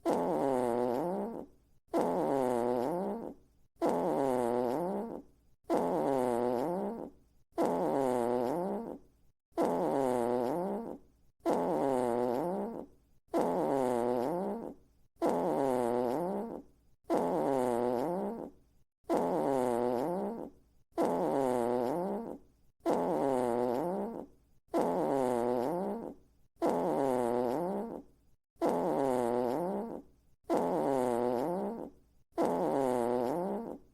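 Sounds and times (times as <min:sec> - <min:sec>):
fart sound effect: 0:19.1 - 0:24.2, 0:24.8 - 0:28.0, 0:28.6 - 0:33.8.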